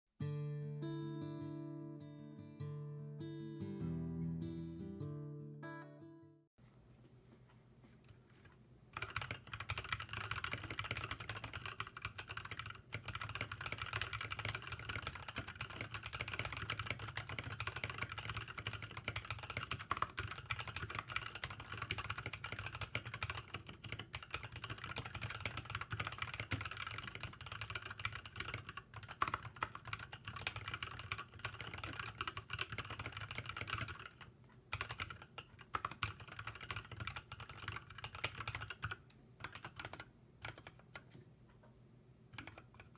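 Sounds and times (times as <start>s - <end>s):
mechanical keyboard typing: 9.0s - 41.2s, 42.4s - 42.9s.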